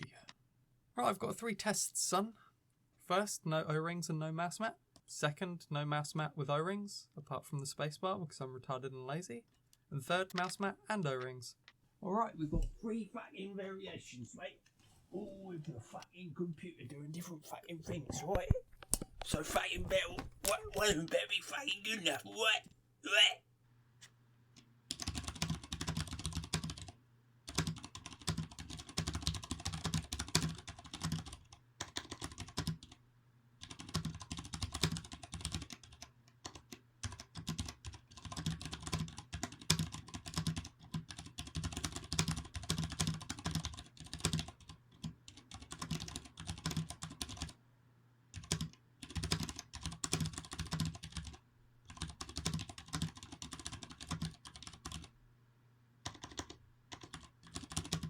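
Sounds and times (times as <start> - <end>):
mechanical keyboard typing: 24.9 - 33.0, 33.6 - 47.6, 48.4 - 55.1, 56.0 - 58.0.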